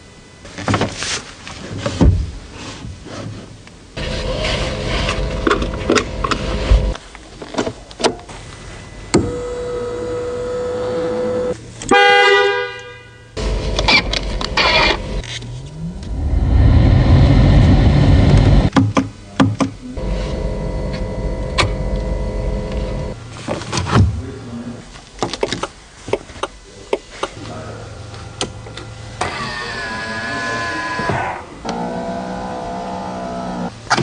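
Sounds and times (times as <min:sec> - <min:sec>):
mechanical whirring: 0:04.0 - 0:07.0, 0:13.4 - 0:18.7, 0:20.0 - 0:23.2
engine deep rumble: 0:04.0 - 0:07.1, 0:13.4 - 0:18.7, 0:19.8 - 0:25.0.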